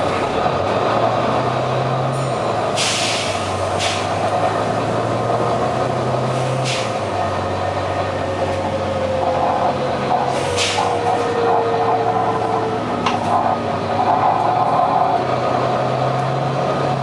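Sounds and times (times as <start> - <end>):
bus engine running: 0.0 - 17.0
engine hissing bursts: 2.2 - 4.2.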